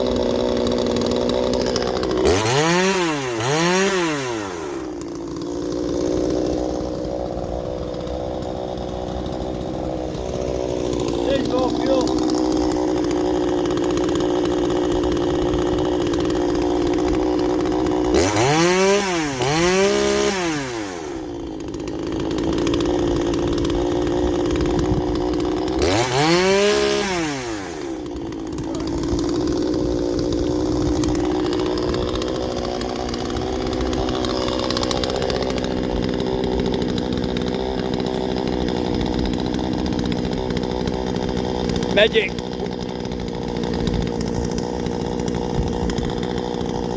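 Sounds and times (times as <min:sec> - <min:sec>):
chainsaw engine idling and revving: 0:00.0 - 0:46.9.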